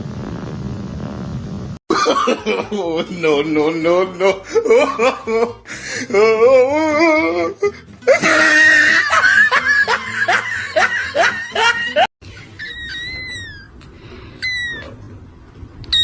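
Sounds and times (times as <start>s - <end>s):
person laughing: 3.9s - 12.8s.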